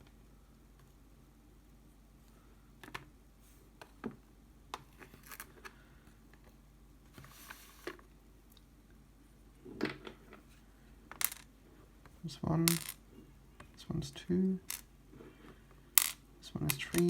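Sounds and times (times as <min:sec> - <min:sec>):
small metal parts clicking: 0:16.0 - 0:17.0.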